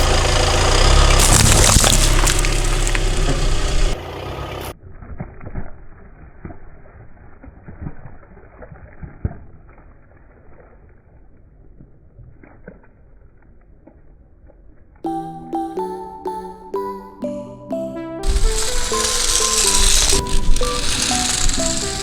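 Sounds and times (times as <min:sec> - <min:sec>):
car rumble: 0:00.0 - 0:04.7
sharp cracks: 0:01.1 - 0:04.0
tyre crunching brittle objects: 0:01.2 - 0:04.0.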